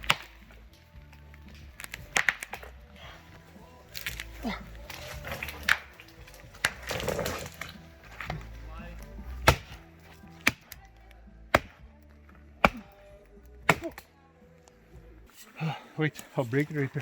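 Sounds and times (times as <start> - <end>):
wood being chopped: 0.0 - 0.7, 1.4 - 2.8, 3.9 - 8.5, 9.1 - 10.9, 11.5 - 13.0, 13.6 - 14.1.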